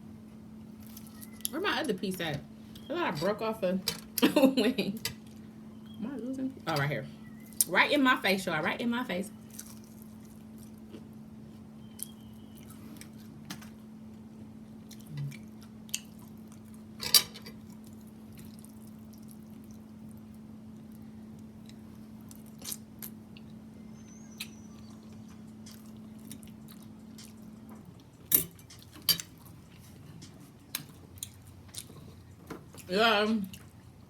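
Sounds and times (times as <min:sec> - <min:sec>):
faint steady hum: 0:00.0 - 0:34.0
chewing crispy fried chicken: 0:00.6 - 0:01.6, 0:09.3 - 0:23.7, 0:24.4 - 0:34.0.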